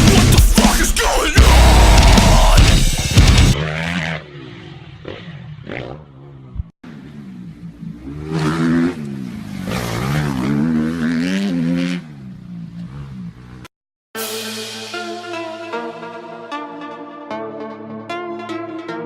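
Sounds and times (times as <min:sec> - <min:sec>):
dirt bike engines revving: 0:00.0 - 0:13.7.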